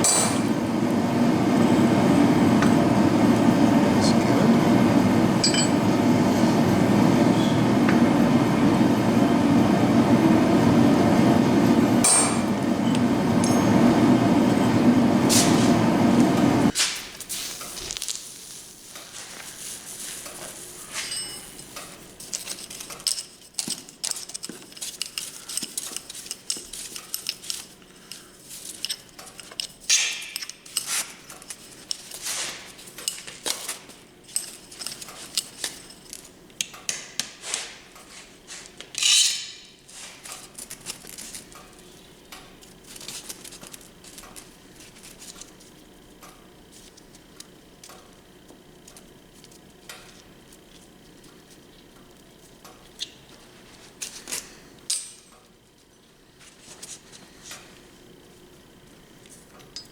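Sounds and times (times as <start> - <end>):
steel pieces clinking: 5.4 - 5.8.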